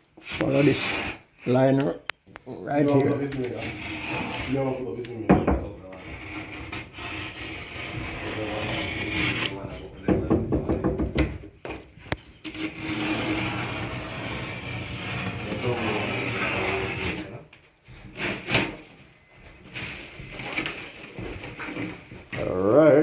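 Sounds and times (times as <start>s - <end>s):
drywall being cut by hand: 0.2s - 2.0s, 3.0s - 11.4s, 12.1s - 17.4s
knock: 5.3s - 5.8s, 10.0s - 11.5s.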